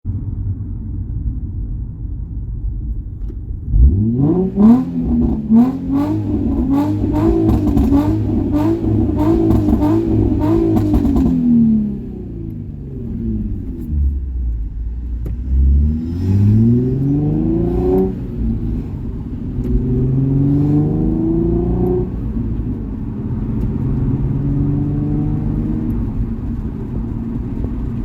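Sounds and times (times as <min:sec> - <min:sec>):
exhaust pops: 0:02.2 - 0:24.4
car engine revving: 0:03.6 - 0:28.0.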